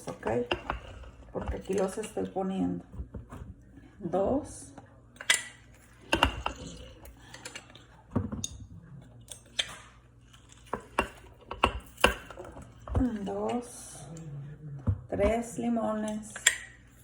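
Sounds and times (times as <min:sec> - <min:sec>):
utensils and dishes knocking: 0:10.7 - 0:13.2.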